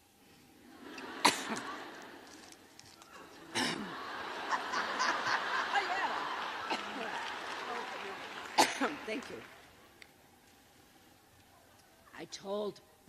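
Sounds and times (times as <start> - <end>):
audience laughing: 0.6 - 9.6
audience murmuring: 0.6 - 12.0.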